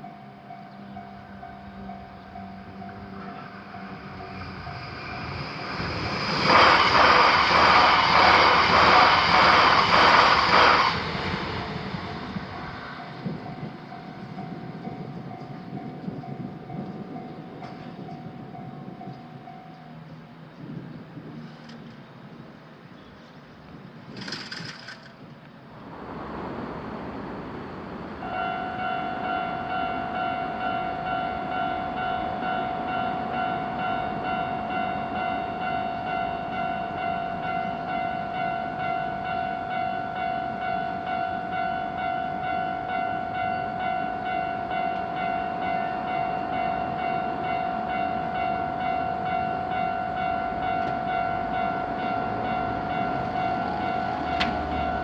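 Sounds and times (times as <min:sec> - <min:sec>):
railroad crossing warning bell: 0:00.0 - 0:20.5, 0:28.2 - 0:55.0
rising rumble: 0:03.4 - 0:15.0.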